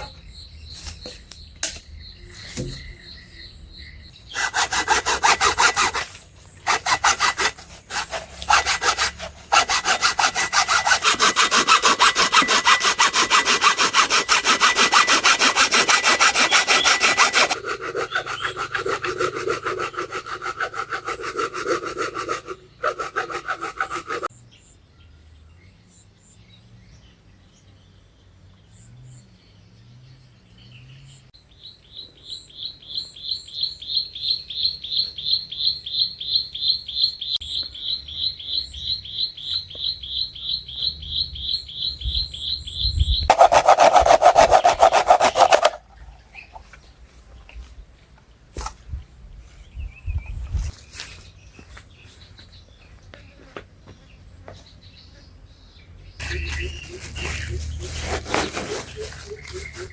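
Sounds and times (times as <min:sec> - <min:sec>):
birds chirping: 0:00.0 - 0:19.5, 0:49.3 - 0:59.9
hand saw rasping: 0:04.3 - 0:24.3, 0:43.3 - 0:45.8, 0:56.2 - 0:59.9.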